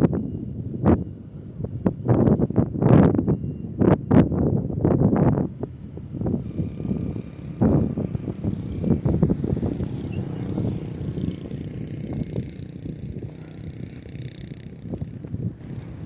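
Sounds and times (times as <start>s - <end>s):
vehicles passing: 4.4s - 16.0s.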